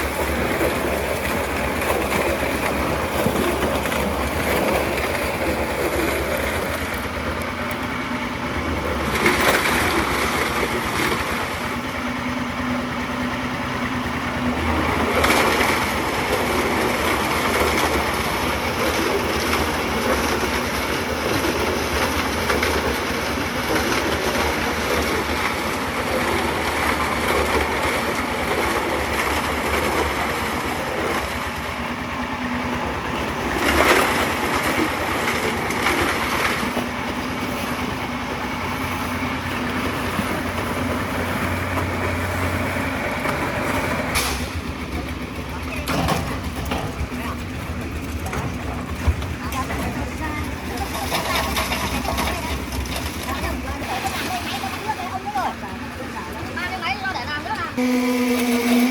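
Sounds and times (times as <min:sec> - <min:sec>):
construction machinery engine running: 0:00.0 - 0:58.9
gritty scraping and crunching: 0:46.2 - 0:55.2.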